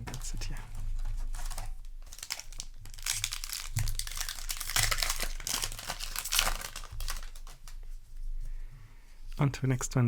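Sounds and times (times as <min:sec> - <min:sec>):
foil wrapper crinkling and tearing: 0:00.0 - 0:07.8.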